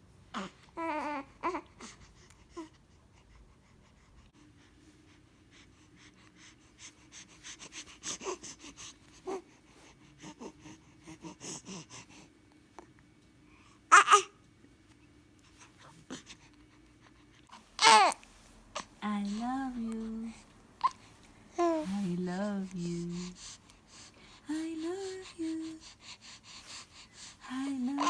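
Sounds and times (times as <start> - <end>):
baby sneezing: 13.9 - 14.3
baby breathing and snuffling: 20.3 - 28.0.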